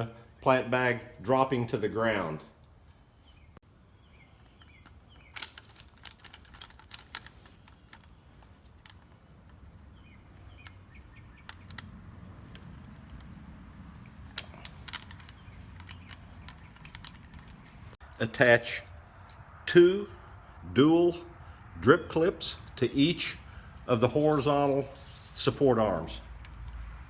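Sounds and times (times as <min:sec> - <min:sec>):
small metal hardware clicking: 0:04.4 - 0:19.5, 0:26.3 - 0:26.9.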